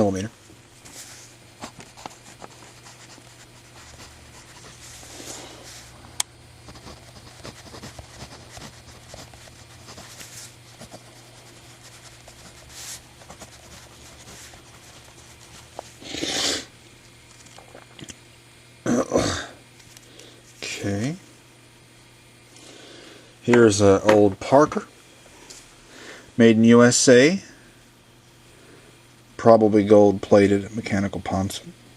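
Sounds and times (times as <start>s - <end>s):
pencil scratching on paper: 1.6s - 5.8s, 6.6s - 15.8s
paper rustle: 6.6s - 16.0s.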